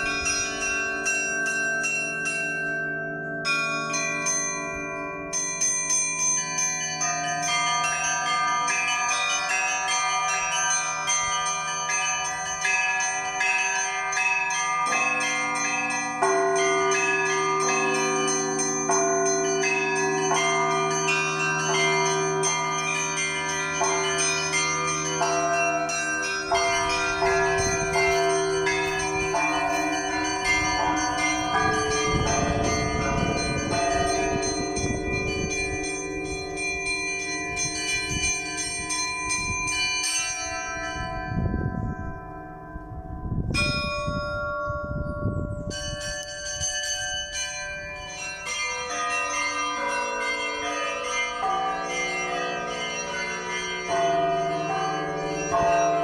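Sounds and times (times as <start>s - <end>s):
church bells ringing: 0.0s - 56.0s.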